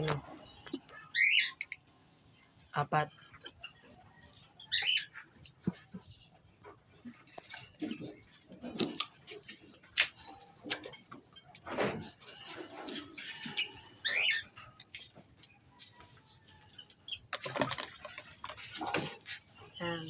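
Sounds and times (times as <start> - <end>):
cockatiels chirping: 0.0 - 1.9, 3.4 - 6.4, 13.2 - 15.1.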